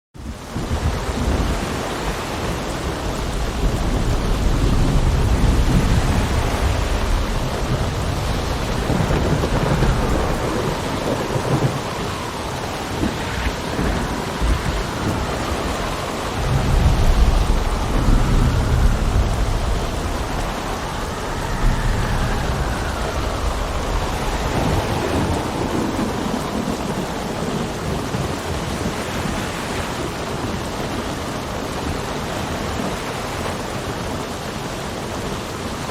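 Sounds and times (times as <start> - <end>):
rain and wind rushing: 0.2 - 35.9
deep rumbles: 3.2 - 28.2.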